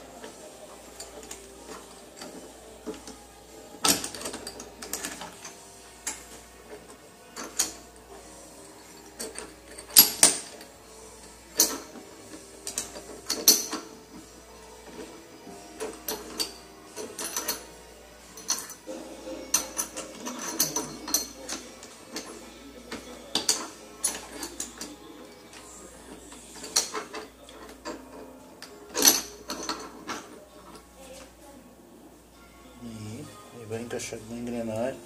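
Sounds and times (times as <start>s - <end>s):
metal gearbox parts clinking: 8.8s - 14.0s, 15.8s - 17.7s, 18.3s - 30.4s.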